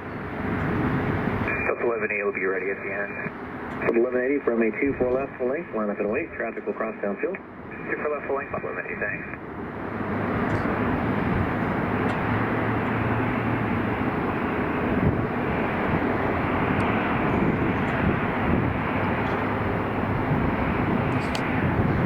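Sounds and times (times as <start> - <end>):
jet engine roar: 0.0 - 22.0.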